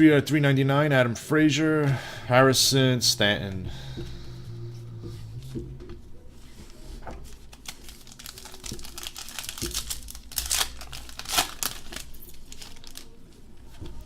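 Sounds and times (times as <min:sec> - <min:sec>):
plastic wrapper crinkling: 0:07.2 - 0:13.8.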